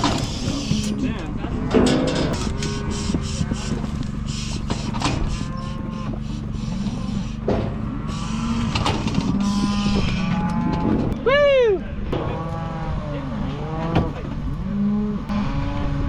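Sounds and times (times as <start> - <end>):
calves bawling: 0.0 - 11.2
low engine hum: 0.0 - 16.0
sharp metal knocks: 1.7 - 3.0.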